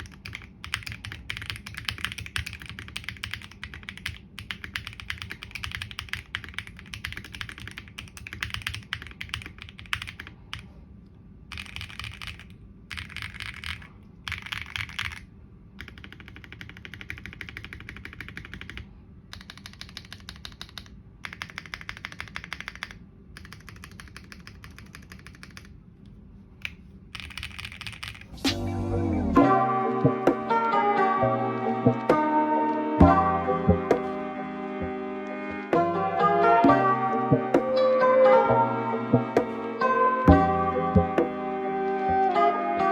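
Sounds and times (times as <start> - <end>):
mechanical keyboard typing: 0.0 - 10.7, 11.5 - 25.8, 26.6 - 28.3.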